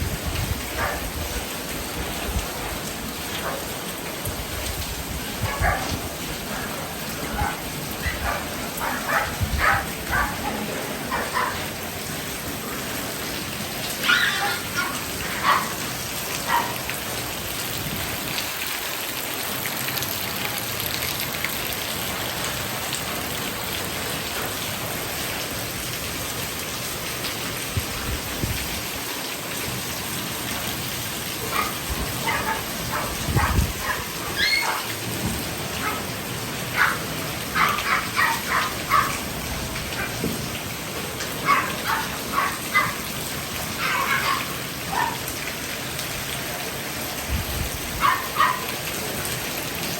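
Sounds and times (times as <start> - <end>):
steady rain falling: 0.0 - 49.9
dogs barking and yelping: 0.7 - 1.2, 3.3 - 3.8, 5.3 - 12.0, 13.8 - 17.0, 31.4 - 40.3, 41.2 - 45.4, 47.8 - 48.9.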